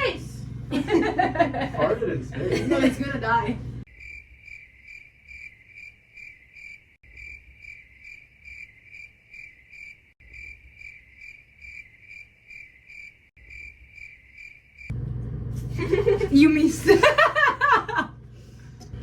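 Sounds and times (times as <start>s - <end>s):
crickets chirping: 3.9s - 15.0s.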